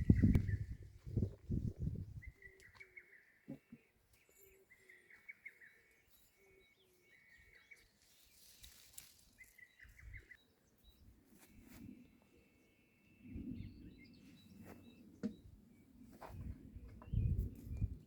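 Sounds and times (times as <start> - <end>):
wind thumps on microphone: 0.0 - 2.3, 16.2 - 18.0.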